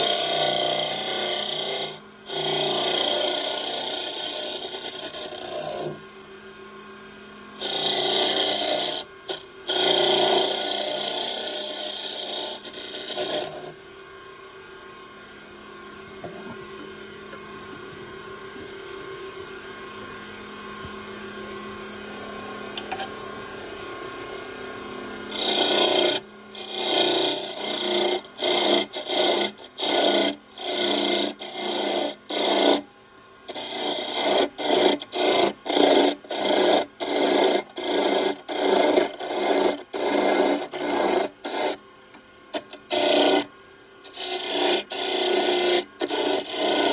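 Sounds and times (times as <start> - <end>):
lathe running: 0.0 - 6.0, 7.6 - 13.8, 25.3 - 32.8, 33.5 - 41.8, 42.5 - 46.9
tool rasping against spinning wood: 0.0 - 6.0, 7.6 - 13.8, 25.3 - 32.8, 33.5 - 41.8, 42.5 - 43.5, 44.1 - 46.9.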